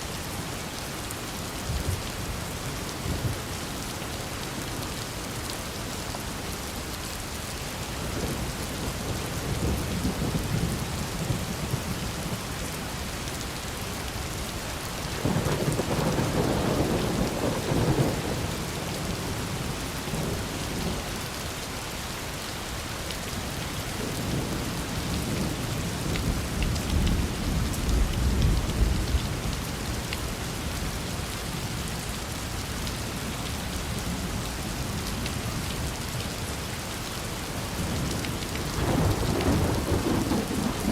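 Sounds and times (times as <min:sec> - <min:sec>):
steady rain falling: 0:00.0 - 0:40.9
rolling thunder: 0:15.1 - 0:19.2, 0:37.8 - 0:40.9.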